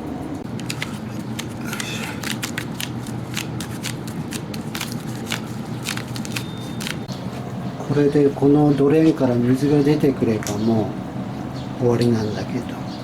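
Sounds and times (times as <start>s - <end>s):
air conditioner humming: 0.0s - 13.0s
crackling clicks of hands working: 0.4s - 7.1s.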